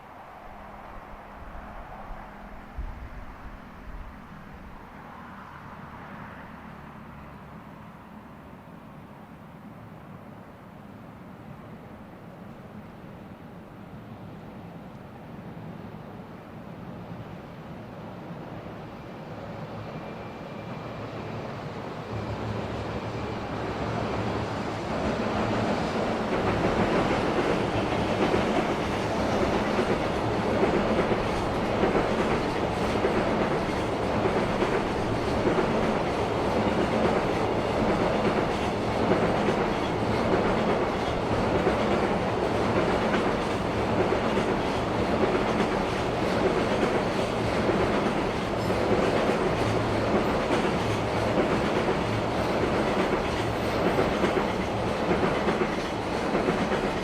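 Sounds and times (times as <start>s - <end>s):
freight train running past: 0.0s - 57.0s.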